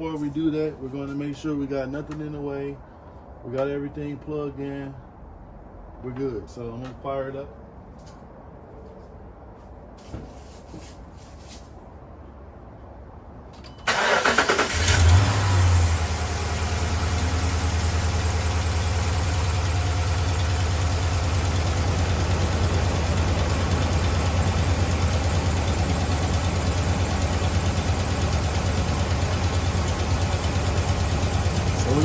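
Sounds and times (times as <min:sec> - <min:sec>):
car engine idling: 0:13.9 - 0:32.0.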